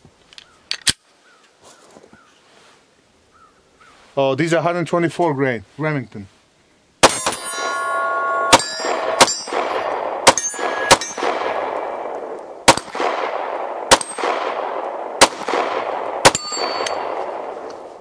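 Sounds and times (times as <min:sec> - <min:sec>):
pistol shots echoing: 0:07.0 - 0:17.9.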